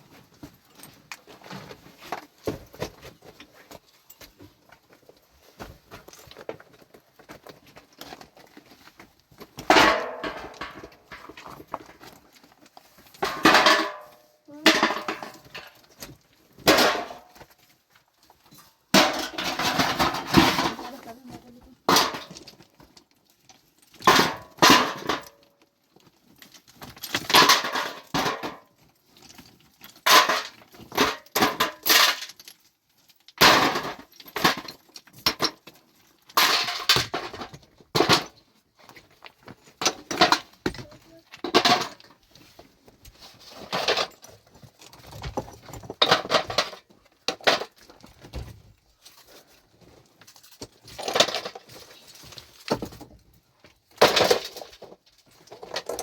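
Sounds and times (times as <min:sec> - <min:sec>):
stones clattering together: 0:18.5 - 0:42.2, 0:42.8 - 0:48.4, 0:50.0 - 0:56.0.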